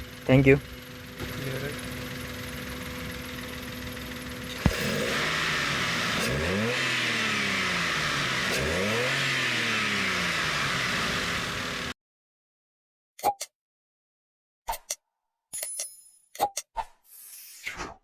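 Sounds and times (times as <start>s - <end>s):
car engine idling and revving: 0.0s - 12.0s.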